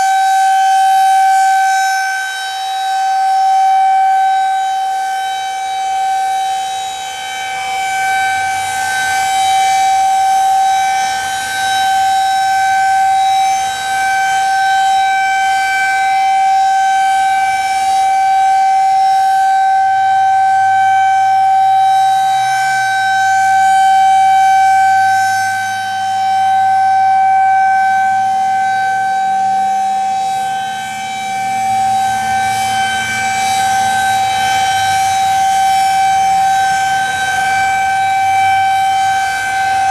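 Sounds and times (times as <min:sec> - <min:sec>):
tornado warning siren: 0:00.0 - 0:39.9.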